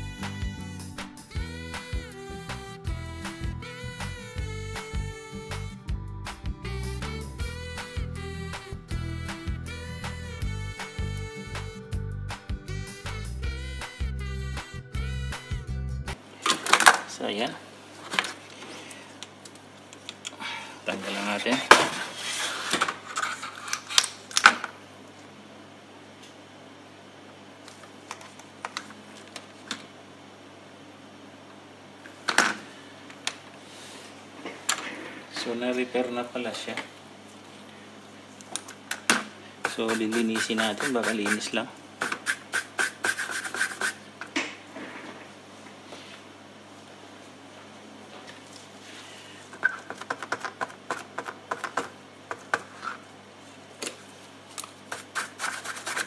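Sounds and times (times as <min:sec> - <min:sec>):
steady low hum: 0:00.0 - 0:16.4.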